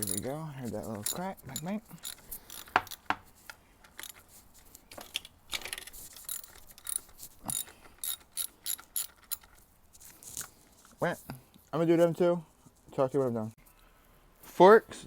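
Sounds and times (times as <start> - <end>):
ratchet wrench clicking: 0.0 - 3.2, 3.9 - 4.2, 5.6 - 9.6.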